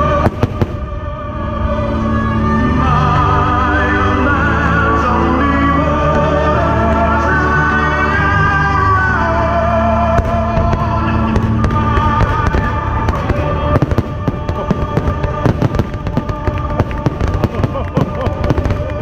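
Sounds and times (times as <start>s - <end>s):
crackling fireworks: 0.0s - 1.2s, 10.1s - 19.0s
fireworks show music: 0.0s - 19.0s
sharp firework bangs: 0.2s - 1.0s, 10.2s - 19.0s.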